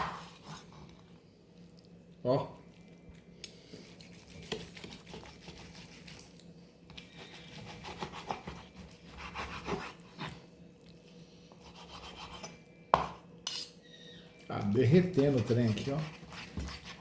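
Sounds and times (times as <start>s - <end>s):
knife sawing through steak: 4.1s - 6.2s, 7.2s - 10.3s, 11.6s - 12.5s, 15.3s - 17.0s.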